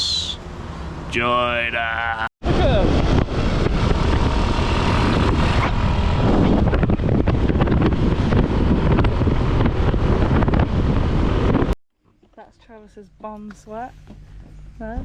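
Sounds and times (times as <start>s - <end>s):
engine and road rumble: 0.0s - 15.0s
wind buffeting microphone: 2.4s - 11.8s.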